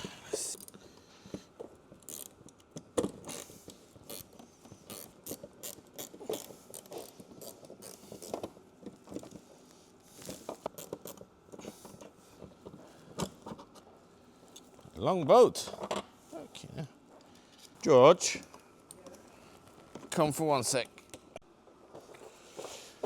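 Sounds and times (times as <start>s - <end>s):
hand ratchet clicking: 2.0s - 3.5s, 4.1s - 8.4s.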